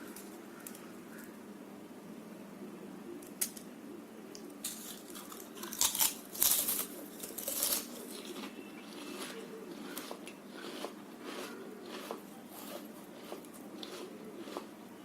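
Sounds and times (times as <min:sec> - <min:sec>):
crunching chips: 0:04.6 - 0:14.8.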